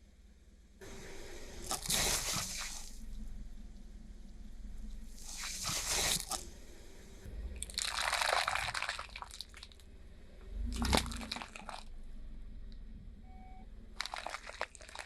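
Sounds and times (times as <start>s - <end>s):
wet squishing: 1.6s - 3.0s, 5.1s - 6.5s, 7.6s - 9.9s, 10.7s - 11.9s, 14.0s - 15.0s.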